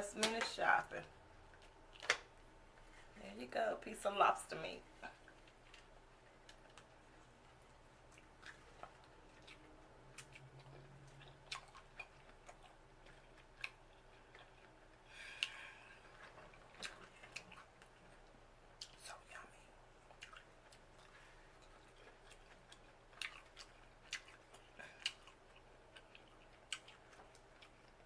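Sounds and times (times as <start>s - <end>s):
chewing and wet mouth sounds: 1.5s - 3.1s, 5.0s - 28.0s
soft mouth clicks and smacks: 5.1s - 18.0s, 18.8s - 19.3s.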